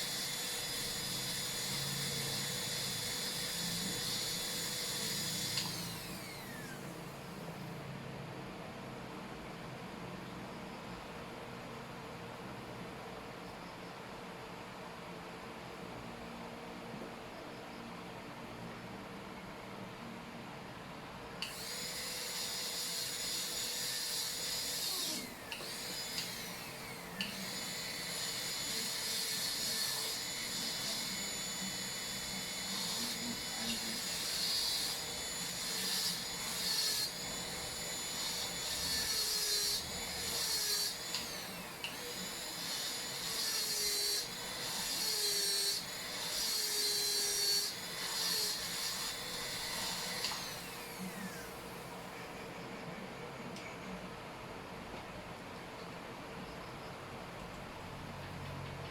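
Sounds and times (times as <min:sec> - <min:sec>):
dental drill whining: 0:00.0 - 0:07.8, 0:21.4 - 0:52.2.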